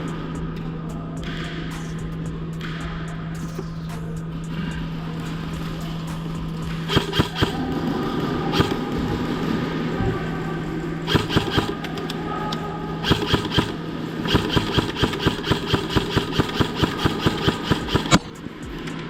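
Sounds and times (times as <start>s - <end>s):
steady low hum: 0.0s - 19.0s
airsoft guns firing: 6.3s - 18.4s.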